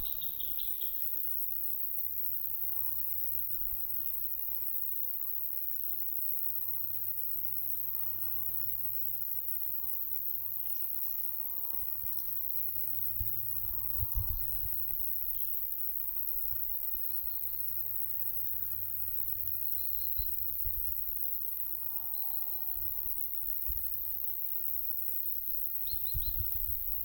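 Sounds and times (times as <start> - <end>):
insects chirring: 0.0 - 27.0.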